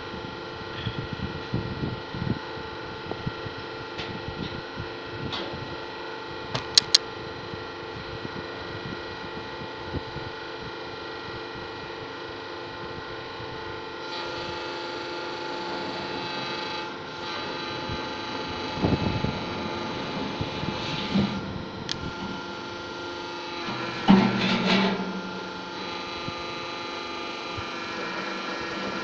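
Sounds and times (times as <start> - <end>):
machine humming whine: 0.0 - 29.0
sharp clicks: 6.6 - 7.0.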